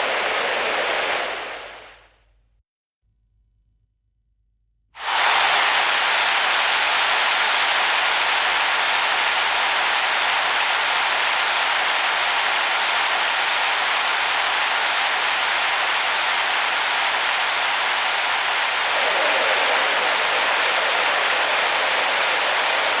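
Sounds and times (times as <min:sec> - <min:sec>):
steady hiss of noise: 0:05.0 - 0:23.0.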